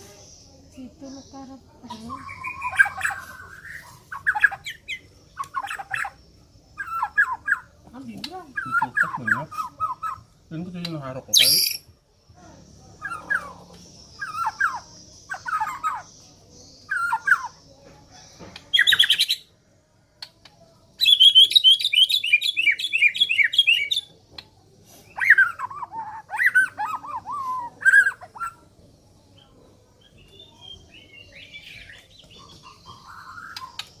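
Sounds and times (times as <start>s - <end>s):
bird whistling song: 1.9s - 6.2s, 11.3s - 11.9s, 16.8s - 17.6s, 21.0s - 24.1s, 25.0s - 28.6s, 29.4s - 34.0s.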